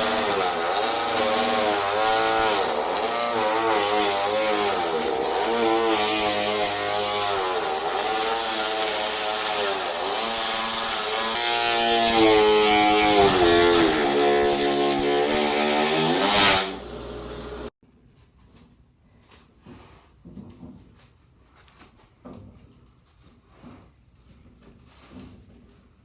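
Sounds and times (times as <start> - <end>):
milling machine motor running: 16.6 - 17.7.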